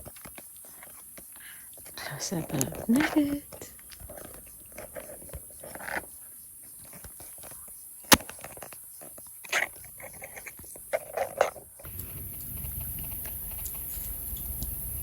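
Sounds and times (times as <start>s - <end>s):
sharp click: 8.1s - 8.3s.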